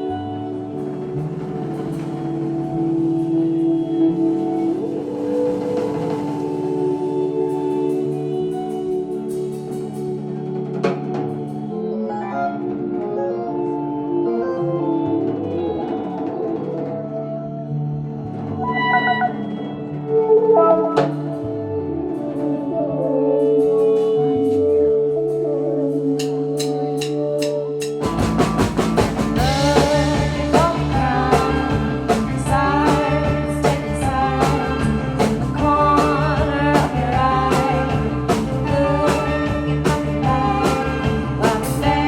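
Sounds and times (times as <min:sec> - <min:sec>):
drums beating steadily: 0:00.0 - 0:11.9, 0:26.2 - 0:42.0
live band playing: 0:00.0 - 0:42.0
sliding bass notes: 0:28.0 - 0:42.0.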